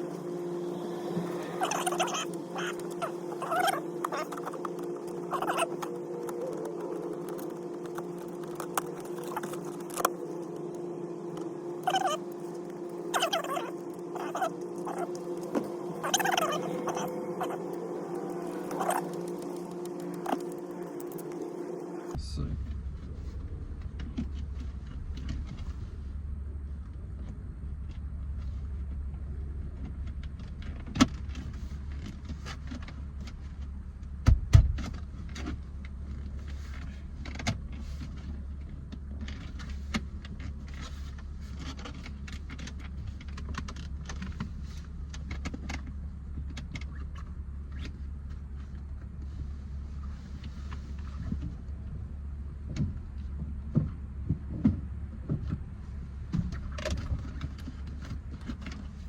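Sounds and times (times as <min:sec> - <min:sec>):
low steady hum: 0:00.0 - 0:59.0.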